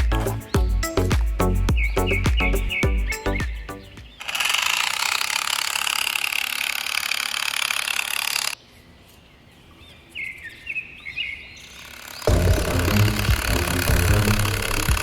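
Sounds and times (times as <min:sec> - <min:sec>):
bird chirps: 0:00.0 - 0:04.4.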